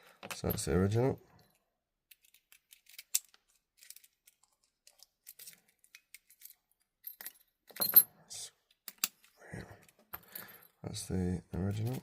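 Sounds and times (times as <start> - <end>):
metal keys clinking: 1.4 - 8.1.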